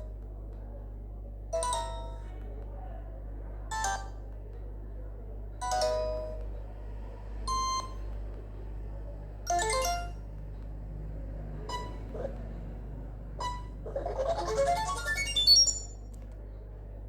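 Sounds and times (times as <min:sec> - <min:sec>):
phone ringtone chiming: 0:09.5 - 0:10.2, 0:13.4 - 0:16.0.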